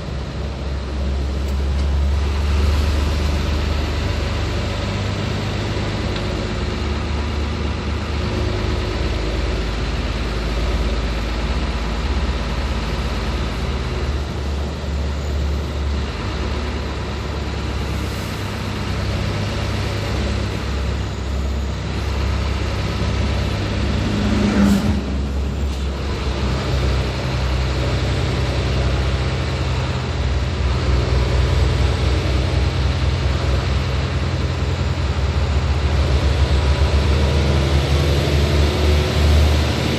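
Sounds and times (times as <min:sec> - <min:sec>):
road noise: 0:00.0 - 0:39.9
truck diesel engine running: 0:00.0 - 0:39.9.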